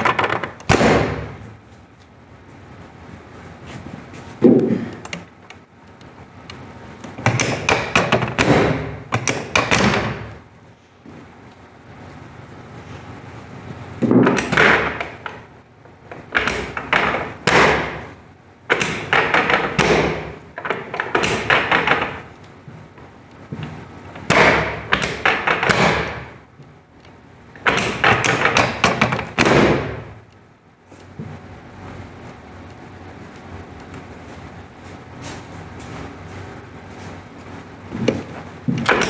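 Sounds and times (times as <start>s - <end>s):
table sections dropping with thuds: 0.0s - 1.6s, 4.4s - 5.3s, 7.1s - 10.4s, 14.0s - 15.5s, 16.1s - 22.9s, 23.5s - 26.4s, 27.6s - 30.2s, 37.9s - 39.0s.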